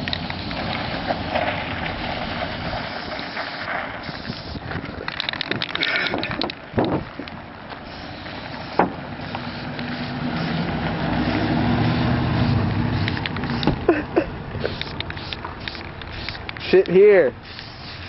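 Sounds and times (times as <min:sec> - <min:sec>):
vehicle engine droning: 0:00.0 - 0:18.0.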